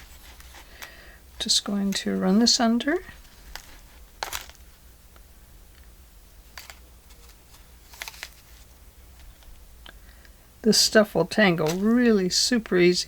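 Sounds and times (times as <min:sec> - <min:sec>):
soft rustles of thread: 0:00.0 - 0:04.8
faint steady hum: 0:00.0 - 0:13.0.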